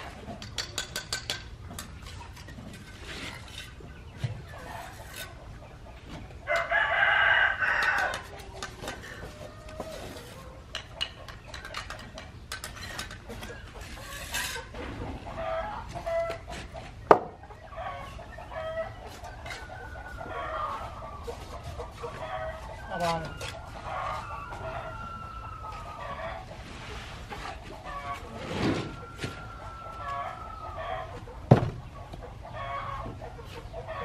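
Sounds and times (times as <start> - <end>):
rooster crowing: 6.5 - 8.3, 22.2 - 26.4, 27.9 - 31.2
chicken calls: 13.2 - 34.0.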